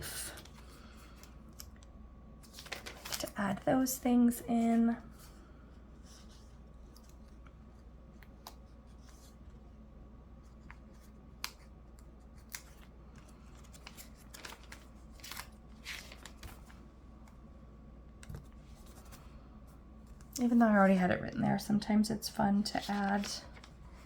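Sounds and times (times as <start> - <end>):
paper rustling and scratching: 2.4 - 3.6, 10.5 - 16.8, 22.6 - 24.0.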